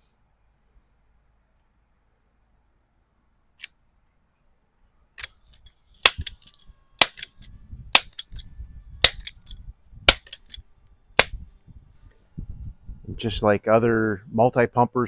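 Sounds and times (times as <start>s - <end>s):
air rifle pump lever clacks: 6.0s - 10.6s
low rumble: 7.4s - 13.5s.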